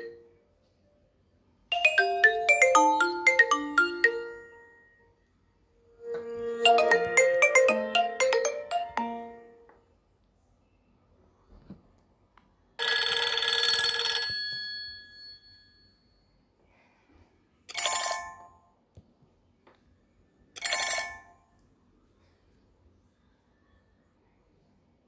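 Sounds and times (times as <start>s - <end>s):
phone ringtone bell-like ring: 1.7s - 5.2s, 6.0s - 9.6s, 12.8s - 16.4s, 17.7s - 18.6s, 20.6s - 21.5s.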